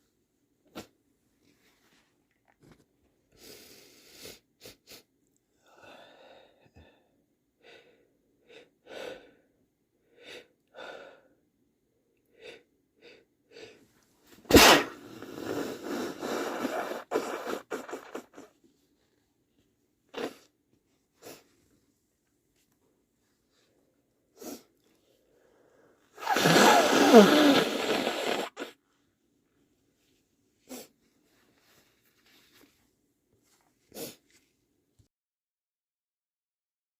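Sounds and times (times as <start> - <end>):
person sniffling: 3.3 - 7.0, 14.5 - 18.6, 21.2 - 21.6, 24.3 - 24.8, 26.2 - 28.8, 30.6 - 31.0, 33.8 - 34.4
loud sneeze: 14.5 - 18.5, 26.2 - 28.8.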